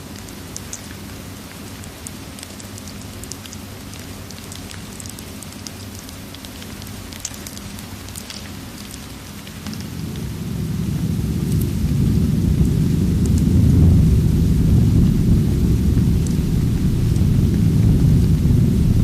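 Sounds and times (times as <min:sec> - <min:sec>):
rain falling: 0:00.0 - 0:19.0
fireplace crackling: 0:09.4 - 0:19.0.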